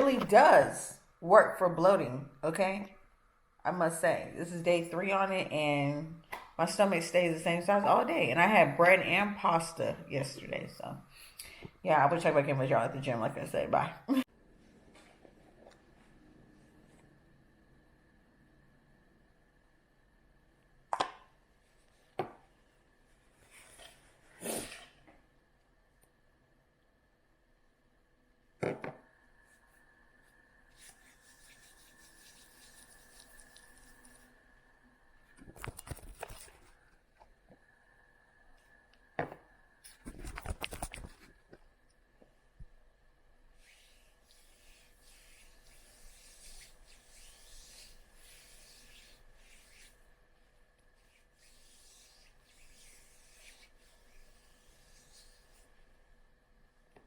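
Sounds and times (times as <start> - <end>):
faint electrical hum: 0.0 - 57.0
faint rubbing and scratching: 29.4 - 34.3, 43.6 - 55.8.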